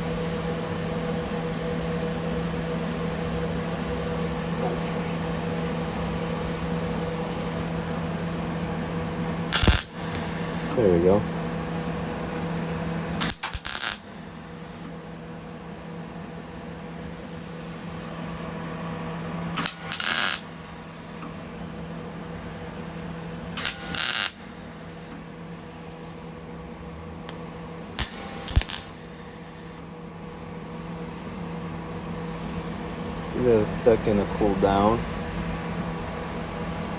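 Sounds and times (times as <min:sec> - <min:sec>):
steady hum: 0:00.0 - 0:36.9
welder arc crackling: 0:03.8 - 0:15.0, 0:17.0 - 0:21.4, 0:22.7 - 0:25.2, 0:28.0 - 0:29.8.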